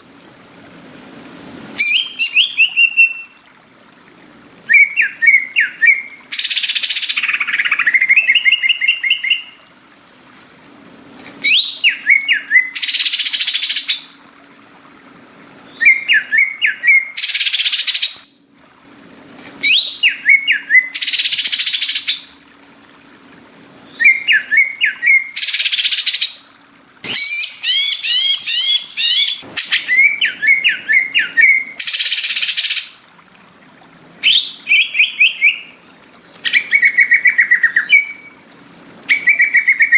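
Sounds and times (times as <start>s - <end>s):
bird whistling song: 1.8s - 3.4s, 4.6s - 9.6s, 11.4s - 14.2s, 15.7s - 18.4s, 19.6s - 22.3s, 23.9s - 33.0s, 34.2s - 35.8s, 36.4s - 38.4s, 39.1s - 39.9s.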